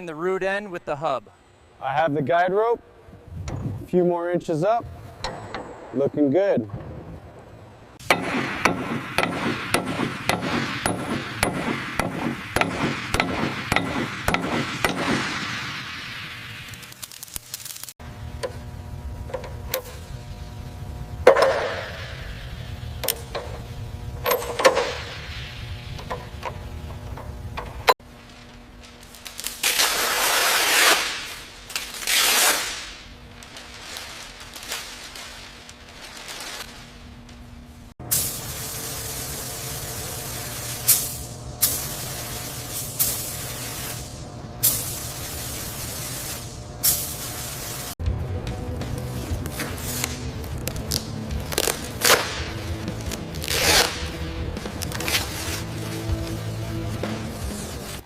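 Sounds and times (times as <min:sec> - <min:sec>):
low hum: 0:04.8 - 0:17.1, 0:18.0 - 0:29.1, 0:48.0 - 0:57.9
hissing spray: 0:38.0 - 0:48.0.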